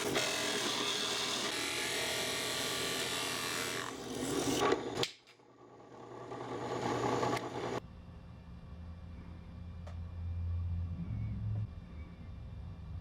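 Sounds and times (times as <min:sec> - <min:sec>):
low hum: 0:07.8 - 0:13.0.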